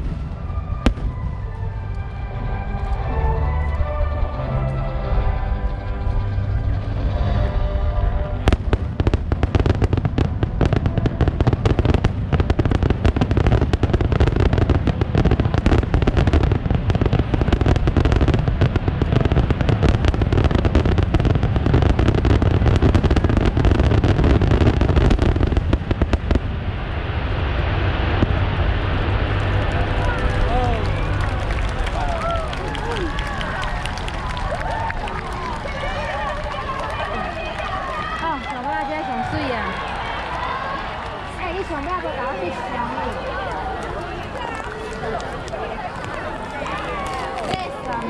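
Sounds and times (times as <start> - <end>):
fireworks crackling and booming: 0.0 - 48.0
soft wash of noise: 25.4 - 31.8.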